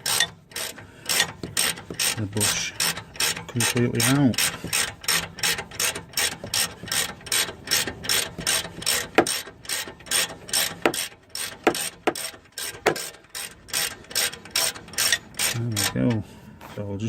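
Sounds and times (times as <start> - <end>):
ratchet clicking: 0.0 - 16.1
sharp squeaks: 0.0 - 16.1.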